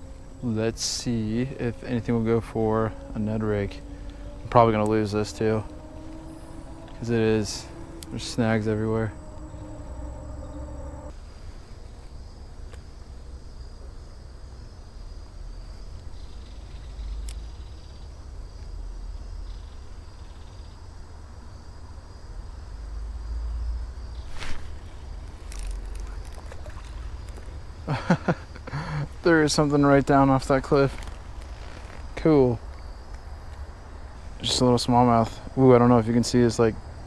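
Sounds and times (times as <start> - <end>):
insect chirring: 0.0 - 11.1, 15.0 - 37.0
low rumble: 0.0 - 11.1.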